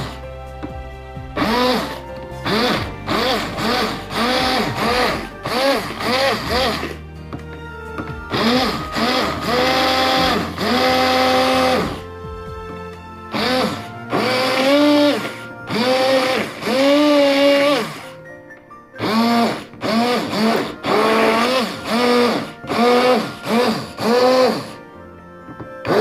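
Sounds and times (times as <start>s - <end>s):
blender motor whirring: 1.4s - 7.0s, 8.0s - 12.0s, 13.3s - 18.2s, 19.0s - 24.8s.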